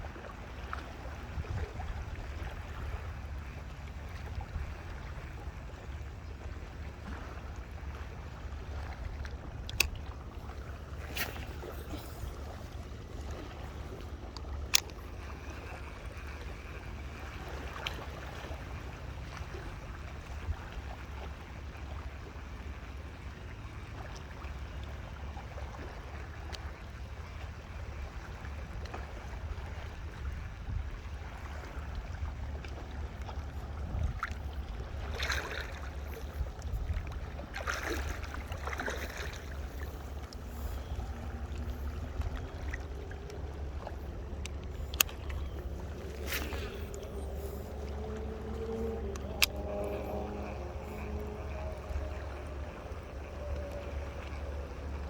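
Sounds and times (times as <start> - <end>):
water lapping and splashing: 0.0 - 55.0
steady low rumble: 30.3 - 55.0.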